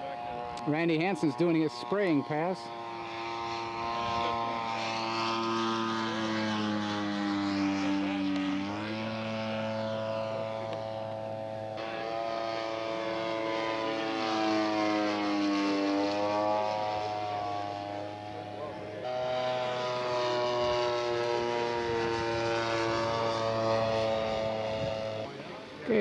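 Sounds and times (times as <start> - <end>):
model airplane engine: 0.0 - 26.0.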